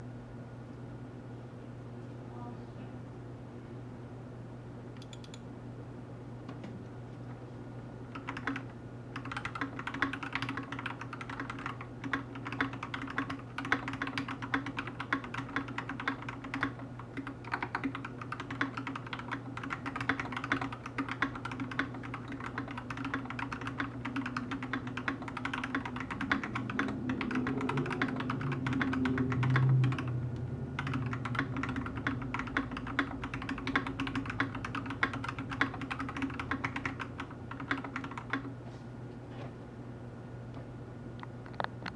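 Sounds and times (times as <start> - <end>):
low background hum: 0.0 - 41.9
mechanical keyboard typing: 8.2 - 38.5.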